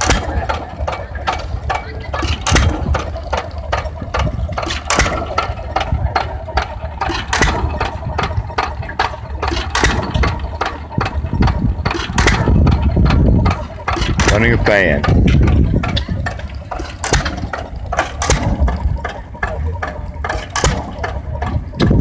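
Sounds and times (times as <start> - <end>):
engine valve clacks and knocks: 0.0 - 22.0
stationary engine rumbling: 0.0 - 22.0.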